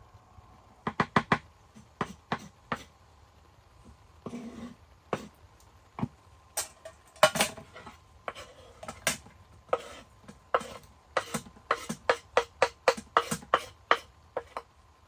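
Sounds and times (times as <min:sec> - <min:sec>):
cookware and utensils clinking: 0:06.6 - 0:09.9.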